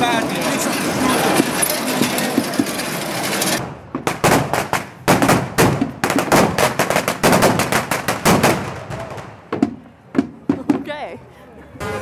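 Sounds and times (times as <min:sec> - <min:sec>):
crowd noise: 0:00.0 - 0:05.1, 0:08.6 - 0:12.0
firecrackers going off: 0:00.0 - 0:10.8.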